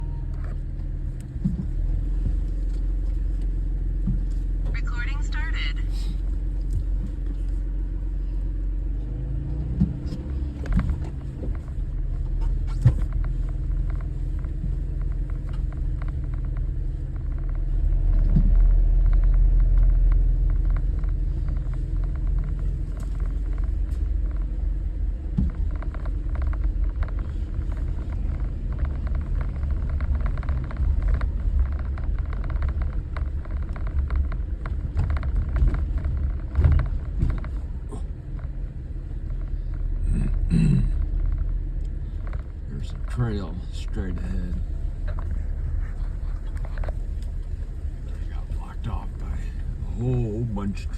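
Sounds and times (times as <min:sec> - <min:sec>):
car engine running: 0:00.0 - 0:50.9
knocks and rattles from bumps: 0:09.4 - 0:50.2.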